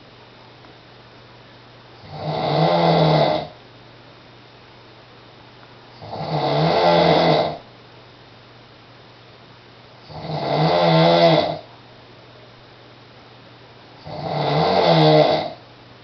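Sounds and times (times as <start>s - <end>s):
man snoring: 2.0s - 3.6s, 6.0s - 7.6s, 10.1s - 11.7s, 14.0s - 15.6s.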